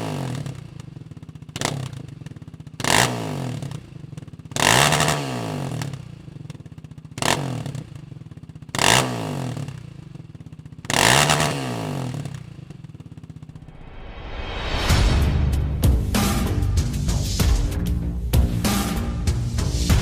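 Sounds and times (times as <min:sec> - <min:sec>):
atv engine idling: 0:00.0 - 0:13.6.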